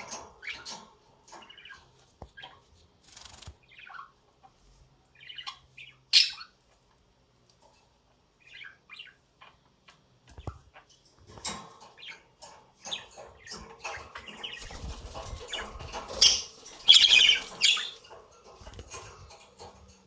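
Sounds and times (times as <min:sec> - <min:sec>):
budgerigar chirping: 0:05.2 - 0:06.6, 0:15.6 - 0:18.0.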